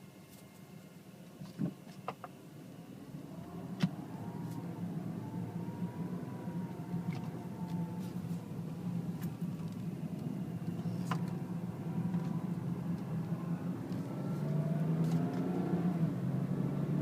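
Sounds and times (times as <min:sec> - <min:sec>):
faint whine: 0:02.3 - 0:16.7
steady low hum: 0:02.4 - 0:15.1.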